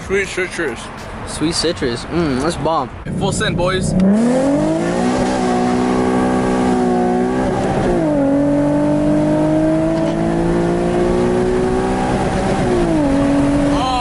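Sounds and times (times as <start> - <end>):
car engine accelerating hard: 3.1 - 14.0.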